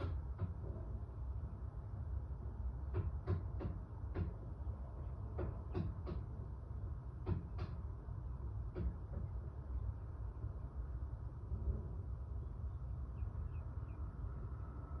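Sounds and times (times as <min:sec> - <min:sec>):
sharp knocks or clicks: 0:00.0 - 0:00.8, 0:02.8 - 0:04.6, 0:05.3 - 0:06.5, 0:07.1 - 0:08.0, 0:08.6 - 0:09.4
low rumble: 0:09.4 - 0:15.0.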